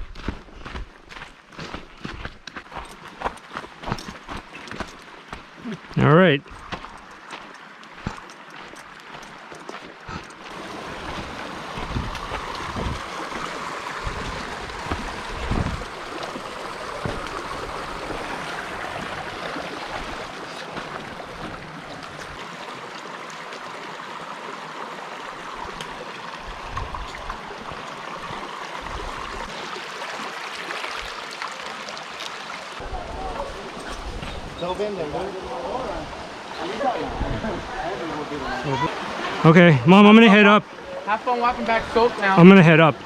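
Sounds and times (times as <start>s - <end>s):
creek water rushing over rocks: 0.1s - 43.0s
low thumps: 14.0s - 15.9s.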